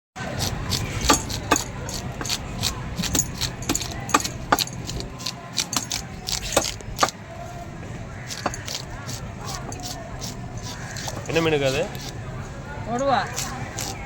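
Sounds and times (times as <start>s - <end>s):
knife chopping fish: 0.2s - 7.2s, 8.3s - 12.2s, 13.2s - 14.0s
low background murmur: 0.2s - 14.0s.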